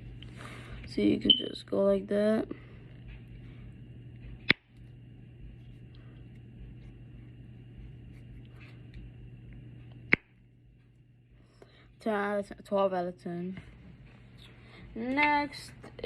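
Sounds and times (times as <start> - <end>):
low hum: 0.0 - 16.0
fidget toy snapping: 4.4 - 4.7, 10.1 - 10.3.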